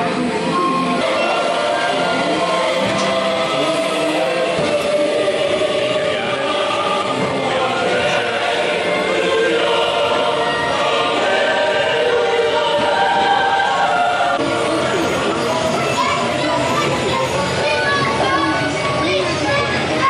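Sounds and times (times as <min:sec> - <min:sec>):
choir singing: 0:00.0 - 0:20.0.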